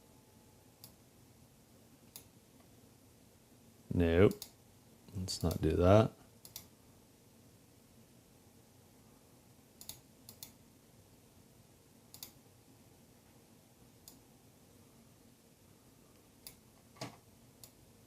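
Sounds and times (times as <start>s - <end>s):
computer mouse clicks: 0.8s - 1.0s, 2.1s - 2.7s, 4.3s - 4.6s, 6.4s - 6.7s, 9.8s - 10.6s, 12.1s - 12.4s, 14.0s - 14.2s, 16.4s - 17.8s.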